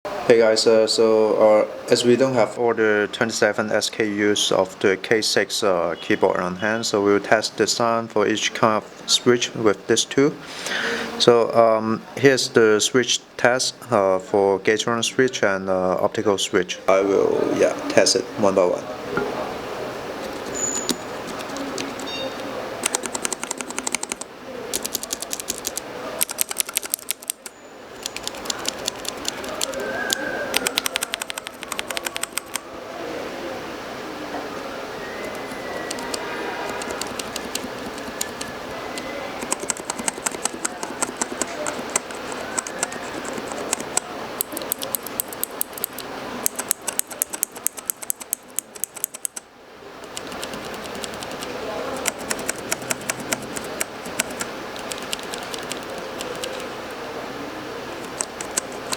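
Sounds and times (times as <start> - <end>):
steady background noise: 0.1 - 58.9
keyboard switches clicking: 20.3 - 32.6, 35.2 - 49.4, 50.0 - 56.7, 58.0 - 58.9.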